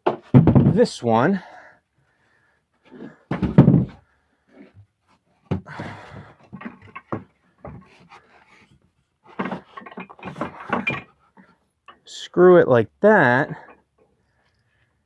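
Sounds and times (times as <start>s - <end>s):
heavy wooden thump: 0.0s - 0.9s, 3.3s - 4.0s
wood knocking: 0.0s - 0.9s, 3.3s - 4.0s
wood scraping: 2.9s - 11.6s.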